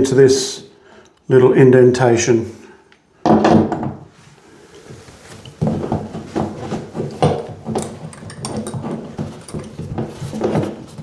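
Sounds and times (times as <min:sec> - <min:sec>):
metal bracket scraping and clicking: 0:05.3 - 0:11.0.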